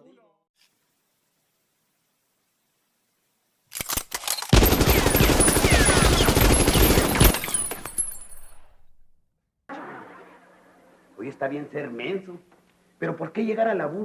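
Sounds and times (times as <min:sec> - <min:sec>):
automatic gunfire: 0:04.5 - 0:08.1.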